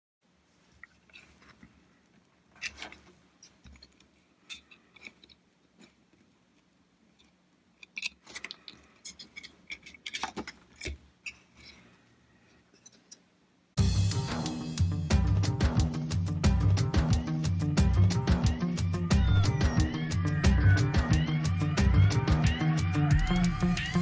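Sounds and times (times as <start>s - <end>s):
plastic parts clicking and tapping: 7.2s - 11.8s.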